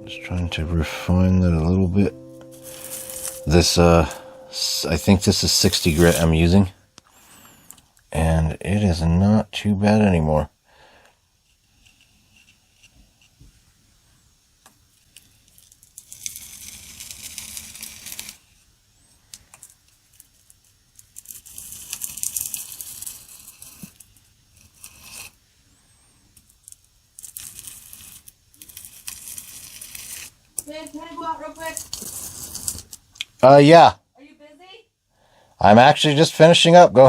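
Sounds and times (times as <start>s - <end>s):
knife scraping on sandpaper: 5.4s - 6.4s, 16.0s - 18.5s, 21.2s - 25.4s, 27.2s - 30.4s, 31.6s - 33.0s.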